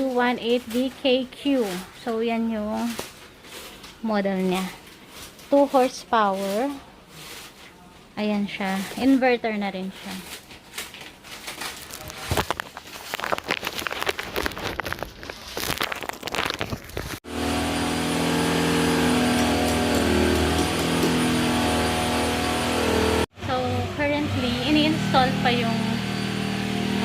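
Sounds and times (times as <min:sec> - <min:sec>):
motor hum: 0:17.3 - 0:27.0.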